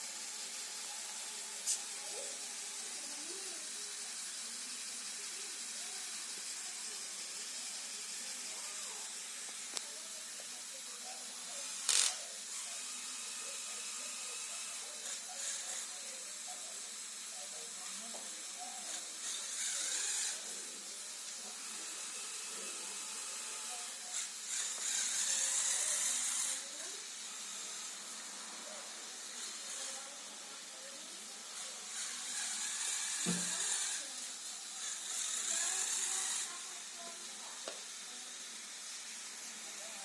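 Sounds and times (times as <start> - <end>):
small electric motors whirring: 0.0 - 40.0.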